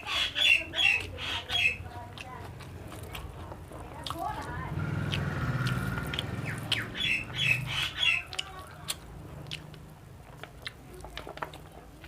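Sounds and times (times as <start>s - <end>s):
bird squawking: 0.0s - 1.9s, 5.8s - 8.4s
person chewing food: 0.9s - 12.0s.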